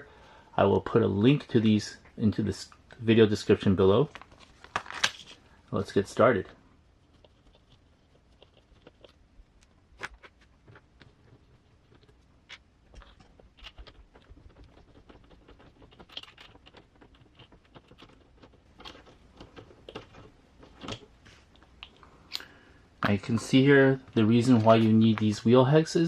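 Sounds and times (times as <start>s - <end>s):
small parts clicking and tapping: 7.2s - 22.6s.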